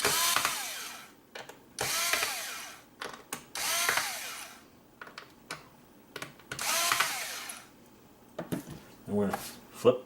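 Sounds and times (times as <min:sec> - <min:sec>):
electric screwdriver whirring: 0:00.0 - 0:01.1, 0:01.8 - 0:02.8, 0:03.6 - 0:04.6, 0:06.6 - 0:07.7.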